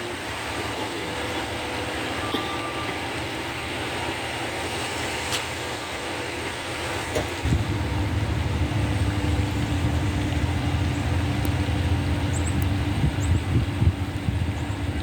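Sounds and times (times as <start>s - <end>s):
road vehicle rumble with hiss: 0.0s - 15.0s
faint clicks: 9.2s - 13.4s.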